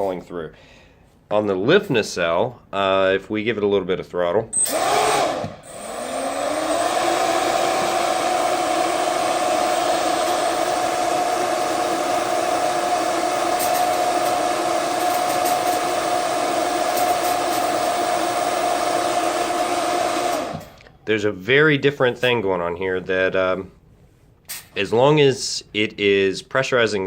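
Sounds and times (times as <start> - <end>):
ducted fan whining: 4.7 - 20.8.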